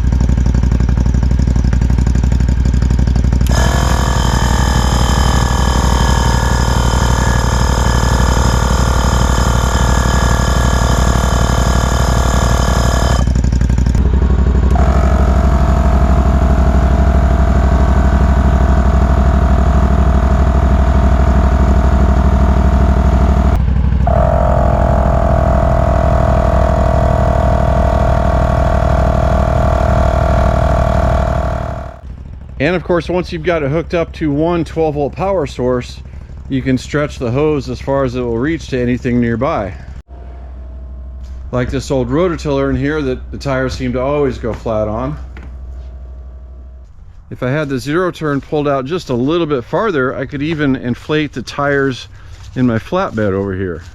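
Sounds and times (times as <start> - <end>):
mower engine idling: 0.0 - 32.4
air compressor whine: 0.1 - 32.7, 40.1 - 47.6.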